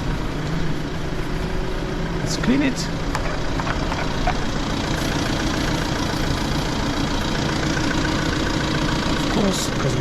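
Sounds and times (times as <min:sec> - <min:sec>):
car engine idling: 0:00.0 - 0:10.0.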